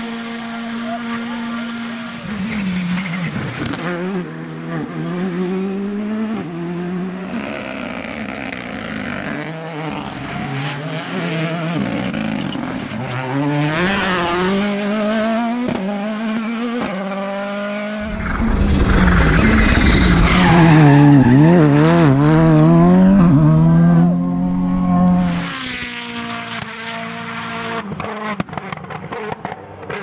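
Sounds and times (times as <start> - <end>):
car engine revving hard: 17.2 - 27.8.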